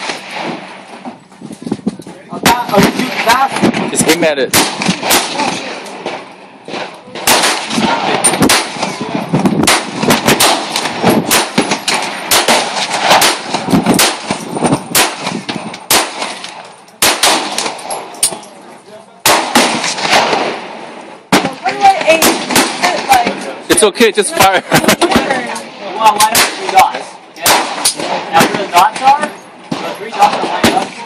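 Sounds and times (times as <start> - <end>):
handgun shots: 9.6 - 18.4.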